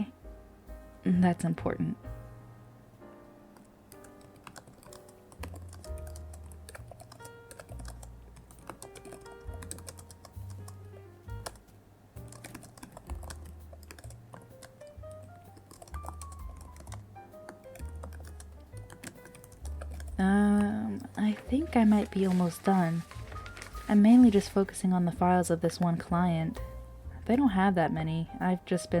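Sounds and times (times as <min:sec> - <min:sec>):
soft background music: 0:00.0 - 0:29.0
typing on computer keyboard: 0:03.6 - 0:10.8, 0:11.4 - 0:11.6, 0:12.2 - 0:21.4.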